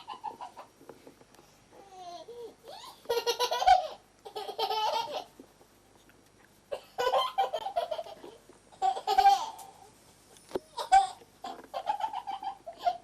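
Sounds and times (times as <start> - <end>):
young child laughing: 6.7 - 9.8.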